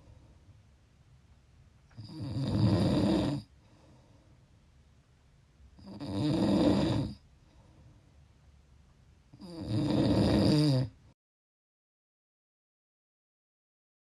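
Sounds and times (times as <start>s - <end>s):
person snoring: 2.0s - 3.5s, 5.8s - 7.2s, 9.4s - 11.0s.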